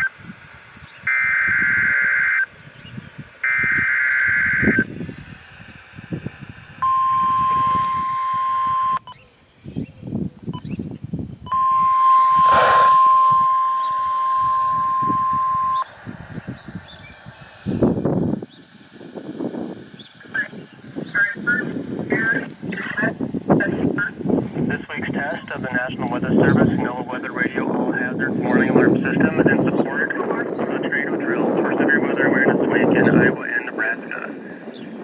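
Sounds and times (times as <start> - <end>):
steady alarm tone: 1.1 - 2.5, 3.4 - 5.0, 6.8 - 9.0, 11.5 - 16.0
two-tone warble bursts: 6.8 - 9.1, 11.5 - 16.5.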